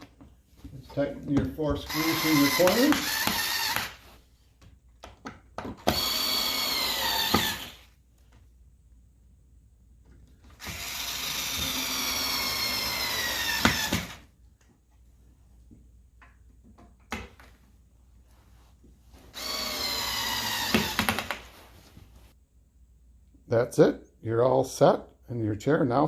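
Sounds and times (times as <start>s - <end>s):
power drill driving screws: 1.9s - 4.0s, 5.8s - 7.8s, 10.6s - 14.2s, 19.3s - 21.4s.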